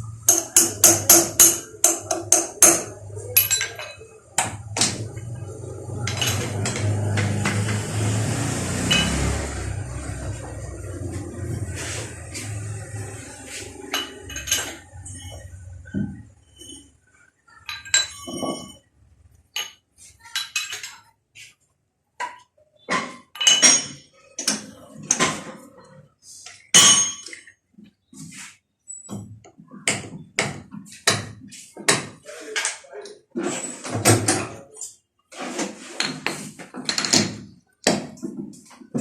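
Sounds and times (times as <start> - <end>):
metal tools clinking: 3.3 - 4.2, 8.9 - 9.4, 13.9 - 15.5, 17.6 - 18.8, 23.3 - 24.6, 26.7 - 27.5.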